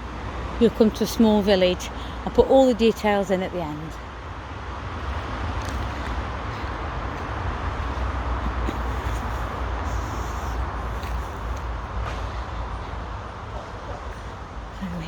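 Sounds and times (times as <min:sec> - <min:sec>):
broad hiss: 0:09.0 - 0:11.8.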